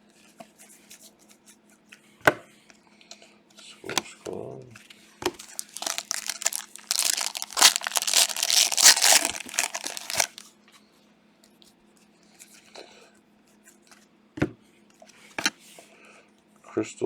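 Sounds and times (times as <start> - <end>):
wrapper tearing and crinkling: 5.4 - 10.4.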